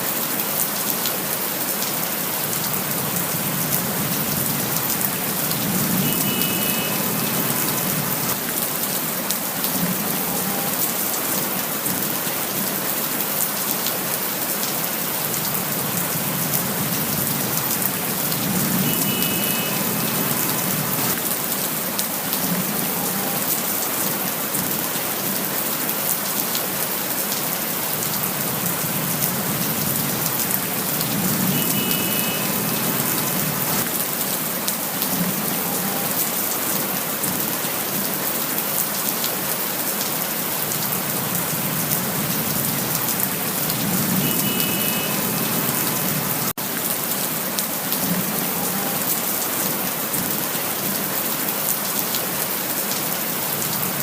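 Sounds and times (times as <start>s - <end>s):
steady rain hiss: 0.0s - 54.0s
rain drop ticks: 0.4s - 37.7s.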